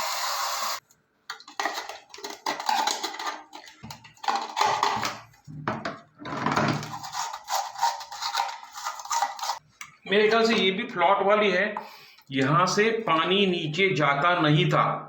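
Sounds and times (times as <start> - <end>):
plastic parts clattering and scraping: 1.3 - 9.6.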